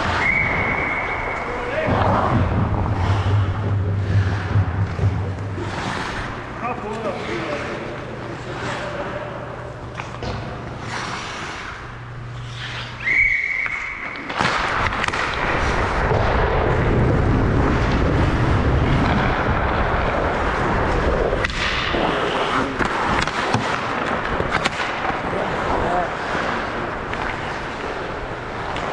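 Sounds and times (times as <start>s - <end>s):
skates scraping on ice: 0.0s - 9.3s, 10.0s - 28.9s.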